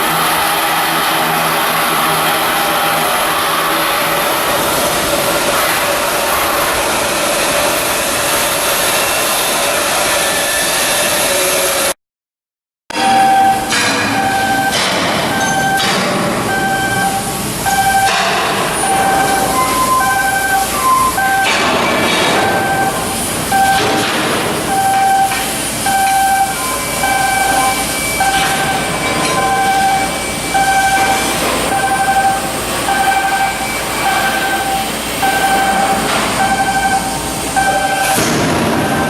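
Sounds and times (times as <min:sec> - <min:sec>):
machinery noise: 0:00.0 - 0:12.0, 0:12.9 - 0:39.0
crane warning alarm beeping: 0:12.9 - 0:39.0.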